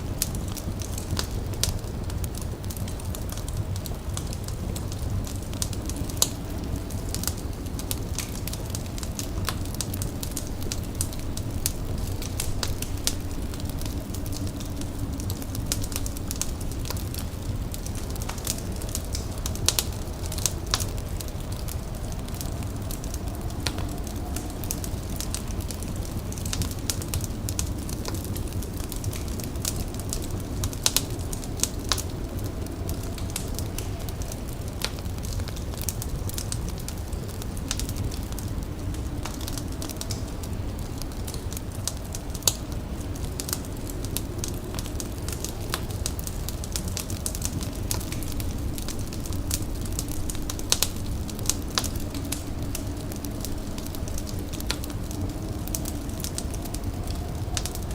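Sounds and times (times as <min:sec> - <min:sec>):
fire crackling and popping: 0:00.0 - 0:57.9
low rumble: 0:00.0 - 0:57.9.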